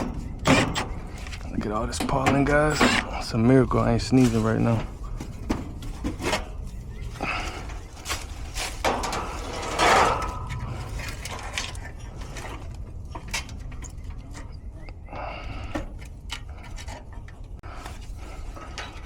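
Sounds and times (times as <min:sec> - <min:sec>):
rubbing and scraping: 0:00.0 - 0:14.8.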